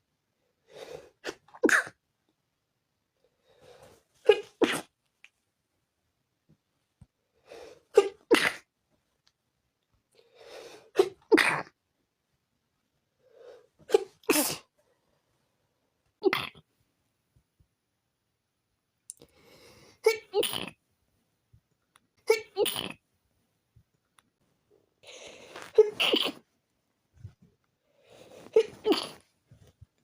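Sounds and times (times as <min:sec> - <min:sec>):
person sneezing: 0:01.2 - 0:02.0, 0:04.2 - 0:05.0, 0:07.9 - 0:08.7, 0:10.9 - 0:11.7, 0:13.9 - 0:14.7, 0:20.0 - 0:20.8, 0:25.1 - 0:26.4, 0:28.3 - 0:29.2.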